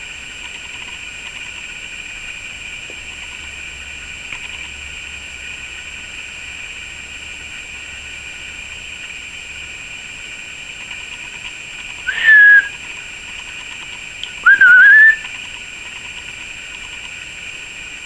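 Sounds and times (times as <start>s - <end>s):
steady hiss: 0.0s - 18.0s
whistled notes: 12.1s - 12.7s, 14.2s - 15.2s.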